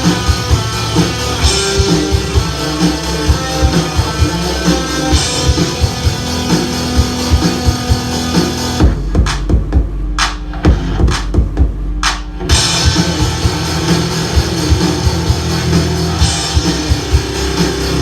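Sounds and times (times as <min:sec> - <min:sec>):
rock guitar: 0:00.0 - 0:09.6, 0:12.3 - 0:18.0
bass: 0:00.0 - 0:18.0
drum kit beat: 0:00.0 - 0:18.0.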